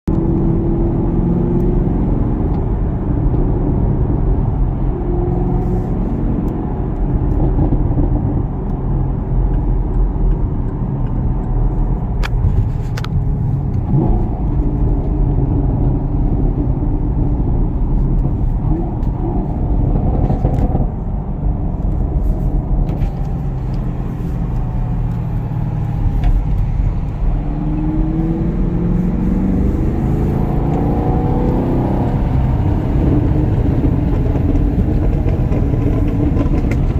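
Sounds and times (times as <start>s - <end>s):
car engine revving: 13.5s - 36.9s
exhaust crackles and pops: 29.2s - 36.9s.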